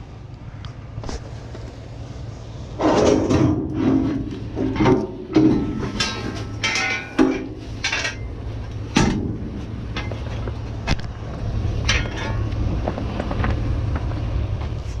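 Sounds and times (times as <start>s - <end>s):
metal junk clanking: 2.8s - 10.4s, 11.8s - 13.5s.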